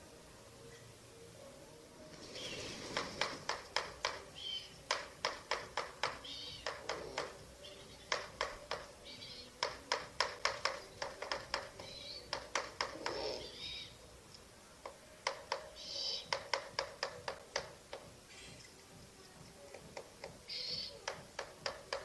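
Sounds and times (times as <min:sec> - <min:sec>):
owls snapping bills: 0:02.7 - 0:13.4
faint high owl calls: 0:04.3 - 0:04.9, 0:06.0 - 0:09.7, 0:11.5 - 0:14.1, 0:15.5 - 0:16.6, 0:20.4 - 0:21.2.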